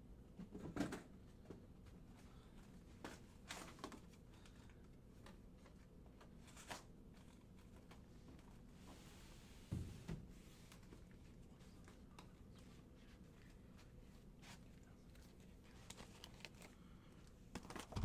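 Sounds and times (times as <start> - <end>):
trading cards and wrappers rustling: 14.6 - 16.9, 17.5 - 18.0.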